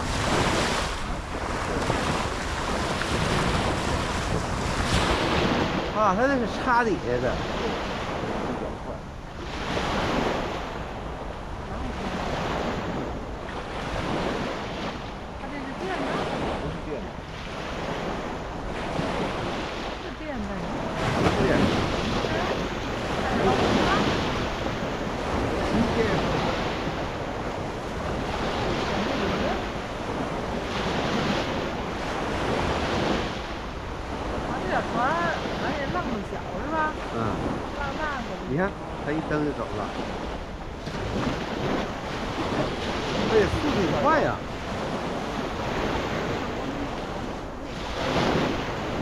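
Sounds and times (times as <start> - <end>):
water washing: 0.0 - 9.0, 20.0 - 49.0
wind buffeting microphone: 0.0 - 49.0.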